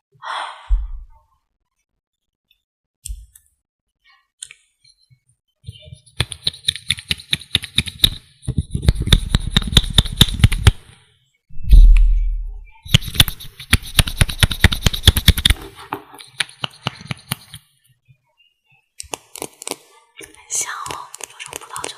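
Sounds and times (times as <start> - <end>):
fingernail clicks and taps on bottle: 20.7 - 21.9.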